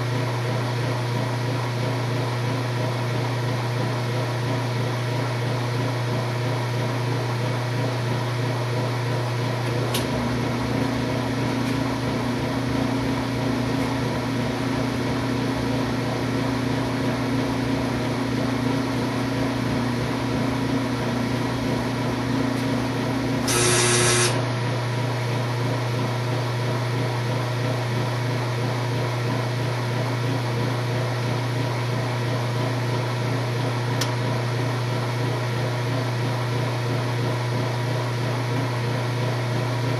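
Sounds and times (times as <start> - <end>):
washing machine humming: 0.0 - 39.9
loud buzz: 23.4 - 24.5.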